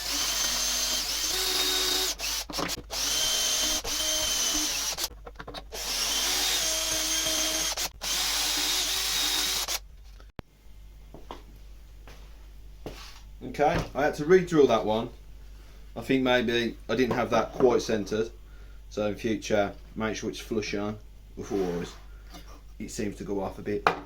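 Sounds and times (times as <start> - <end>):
power drill boring into wood: 0.0 - 5.1, 5.7 - 9.8.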